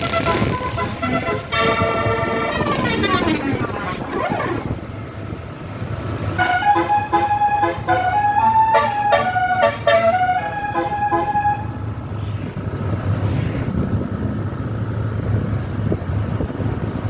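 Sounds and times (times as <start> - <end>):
multi-tone bus horn tune: 0.0 - 5.4, 6.2 - 12.1
low vehicle rumble: 0.0 - 17.0.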